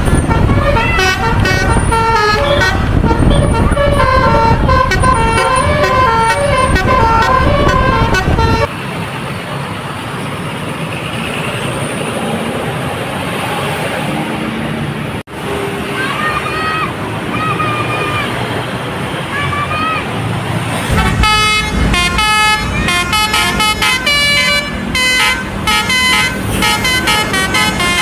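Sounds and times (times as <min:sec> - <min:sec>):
bus horn melody: 0:00.0 - 0:08.7, 0:20.9 - 0:28.0
bus engine rumble: 0:00.0 - 0:28.0.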